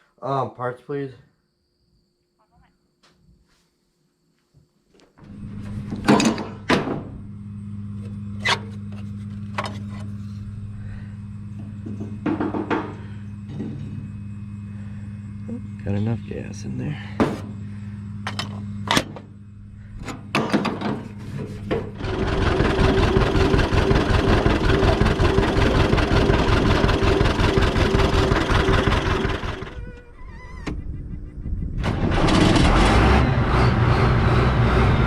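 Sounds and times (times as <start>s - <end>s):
another engine running: 5.2s - 30.1s
engine running with fast pulse: 21.6s - 35.0s.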